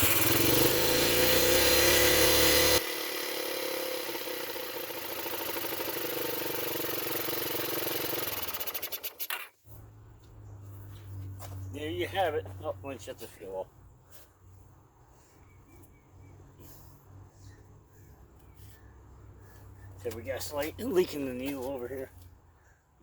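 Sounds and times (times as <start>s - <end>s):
engine running: 0.0s - 13.1s.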